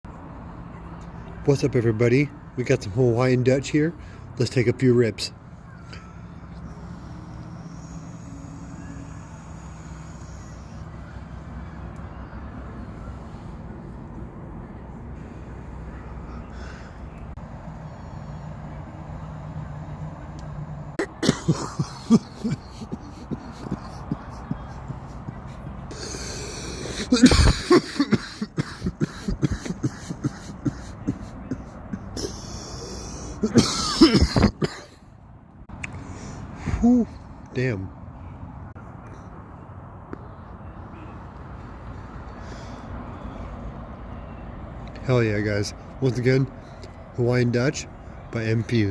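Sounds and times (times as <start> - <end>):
vehicle engine idling: 0.1 - 34.2.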